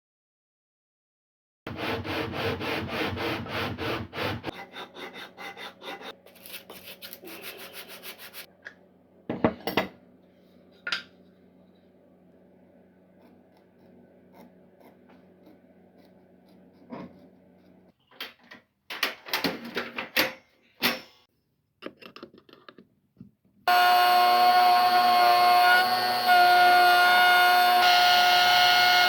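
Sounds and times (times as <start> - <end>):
power tool whining: 23.7 - 29.0.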